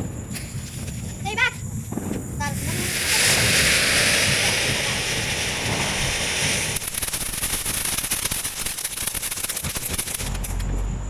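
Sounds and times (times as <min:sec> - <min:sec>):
firework fountain hissing and crackling: 0:00.0 - 0:10.7
low rumble: 0:10.3 - 0:11.0.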